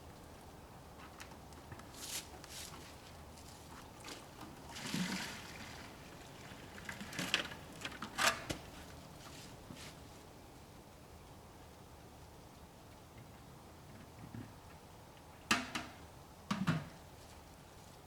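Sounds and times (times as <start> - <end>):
sap sloshing in a bucket: 4.0 - 7.8.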